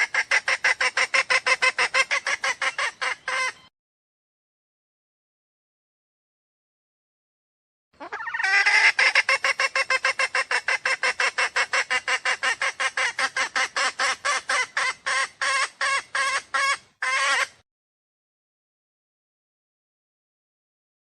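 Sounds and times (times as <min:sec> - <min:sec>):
jungle fowl lure call clucking: 0:00.0 - 0:03.7, 0:08.0 - 0:17.6.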